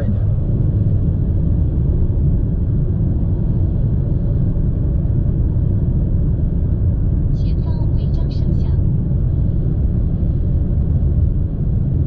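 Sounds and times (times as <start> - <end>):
car cabin road and wind rumble: 0.0 - 12.0.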